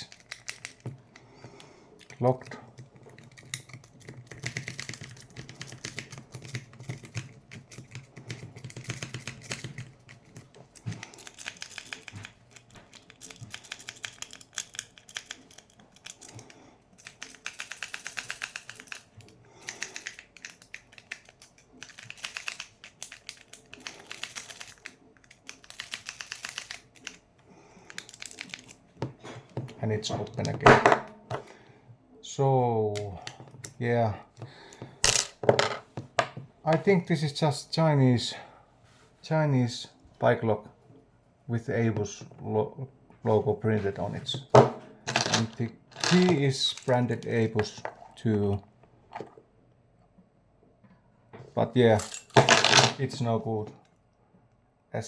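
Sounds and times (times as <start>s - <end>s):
lock wafers clicking: 0.0s - 1.2s, 2.0s - 27.2s, 27.8s - 28.8s.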